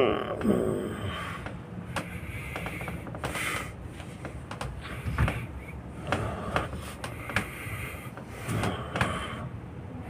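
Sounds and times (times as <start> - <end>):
hands rubbing and patting a back: 1.9 - 5.5, 6.1 - 9.2.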